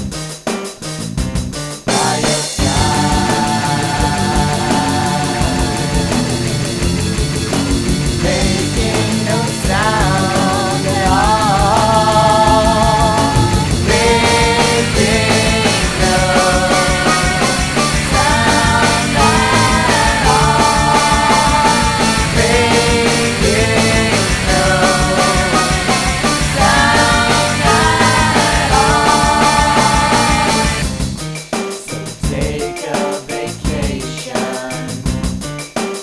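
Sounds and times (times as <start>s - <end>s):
drums playing steady beat: 0.0s - 36.0s
rock band music: 0.0s - 36.0s
melodic lead line: 2.5s - 31.2s.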